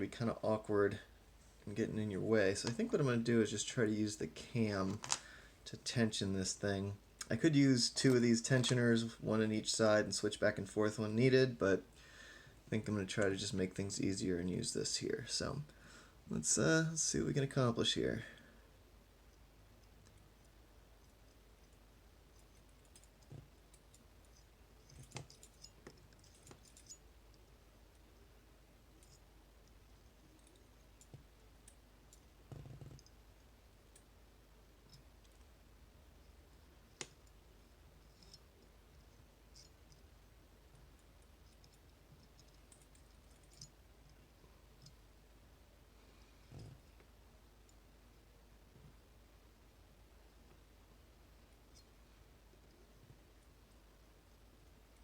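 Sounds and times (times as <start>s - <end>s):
small clicks of lock picking: 21.0s - 27.0s, 40.7s - 44.2s.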